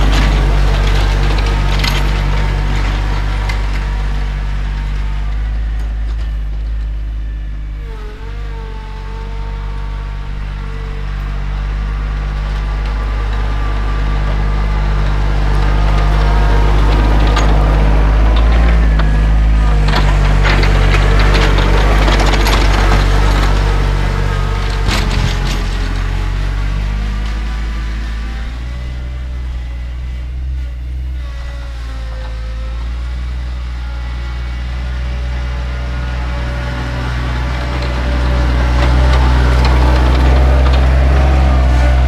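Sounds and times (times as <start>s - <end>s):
rattling: 0.0s - 32.4s
tractor diesel engine running: 0.0s - 42.0s.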